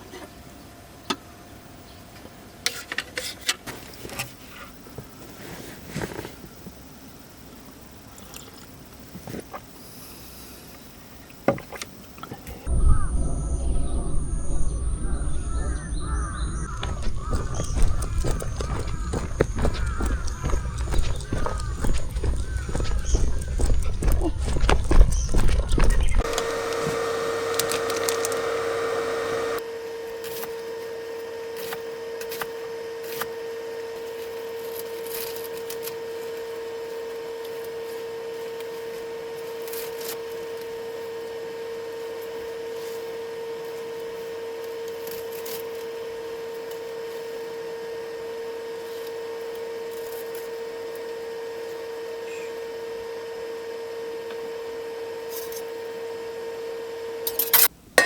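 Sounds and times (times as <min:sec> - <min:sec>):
steady hum: 0:12.5 - 0:29.6.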